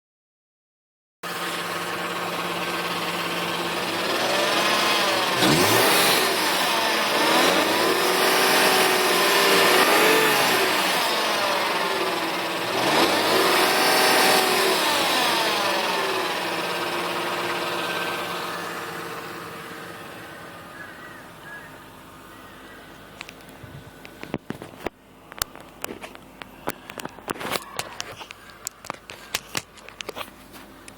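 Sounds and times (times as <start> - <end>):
car engine revving: 1.2 - 21.1
strange engine noise: 1.2 - 30.9.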